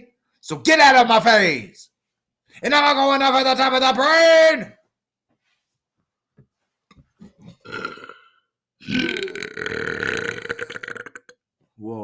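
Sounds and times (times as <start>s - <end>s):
man belching: 7.6s - 11.4s.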